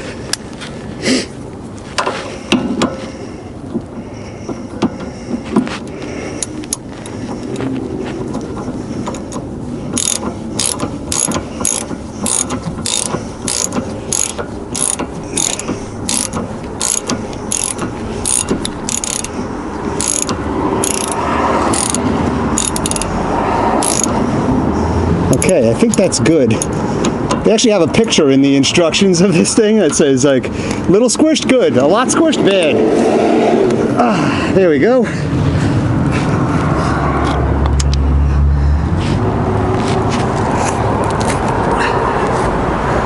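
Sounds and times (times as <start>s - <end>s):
ratchet wrench clicking: 9.0s - 19.4s, 20.0s - 23.2s, 23.8s - 24.2s, 25.3s - 27.4s.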